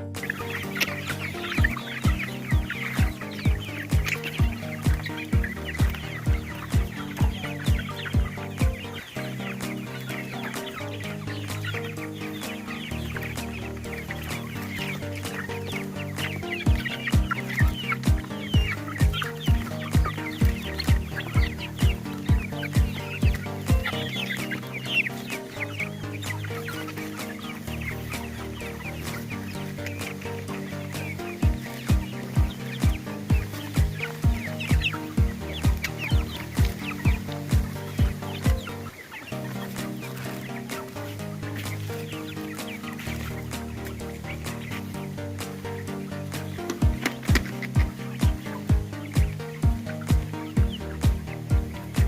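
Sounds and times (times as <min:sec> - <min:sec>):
background music: 0:00.0 - 0:52.0
chickens clucking: 0:00.0 - 0:52.0
steady drum beat: 0:01.6 - 0:08.8, 0:15.1 - 0:24.6, 0:30.8 - 0:38.8, 0:46.3 - 0:52.0.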